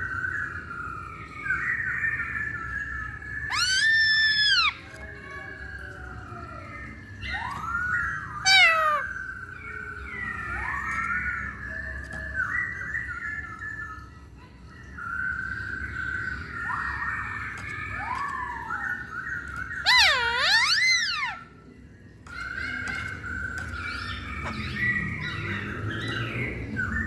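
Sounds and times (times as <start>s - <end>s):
laughingthrush whistled calls: 0.3s - 14.2s, 14.8s - 21.6s, 22.3s - 27.0s
loud sharply falling bird call: 3.5s - 4.8s, 8.4s - 9.2s, 19.6s - 21.5s.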